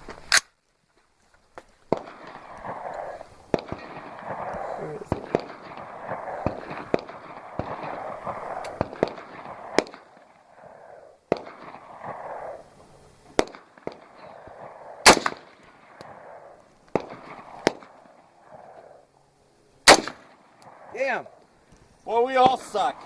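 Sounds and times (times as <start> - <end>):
rifle shots: 1.9 - 12.7, 13.3 - 18.6, 19.8 - 21.2.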